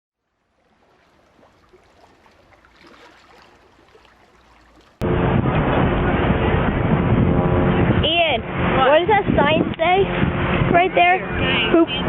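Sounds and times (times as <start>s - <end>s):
wind buffeting microphone: 5.0s - 12.0s.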